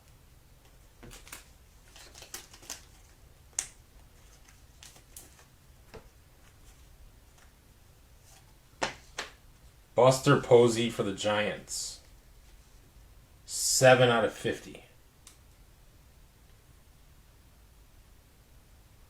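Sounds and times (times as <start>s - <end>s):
cards flipped by hand: 0.7s - 7.5s.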